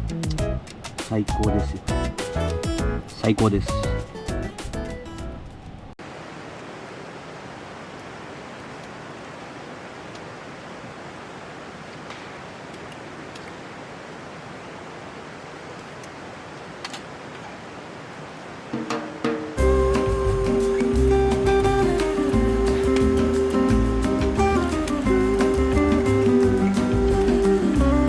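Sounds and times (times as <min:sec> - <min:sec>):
river rushing: 0:06.0 - 0:28.0.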